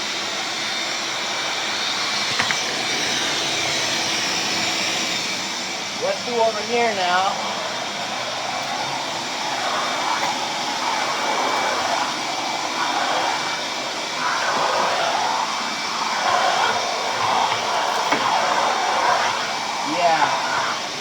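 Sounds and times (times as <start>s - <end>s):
shop vacuum running: 0.0s - 21.0s.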